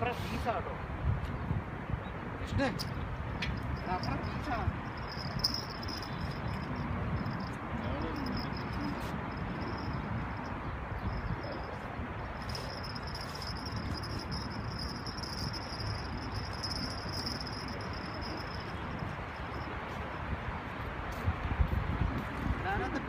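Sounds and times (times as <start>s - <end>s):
insects trilling: 12.4s - 18.8s.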